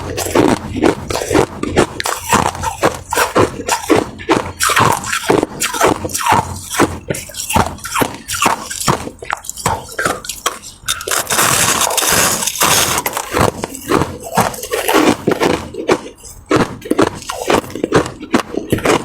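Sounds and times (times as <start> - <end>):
ice being crunched: 4.6 - 19.0.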